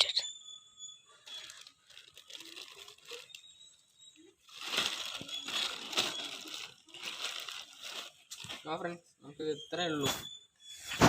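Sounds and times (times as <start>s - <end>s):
plastic packaging crinkling: 1.2s - 8.8s.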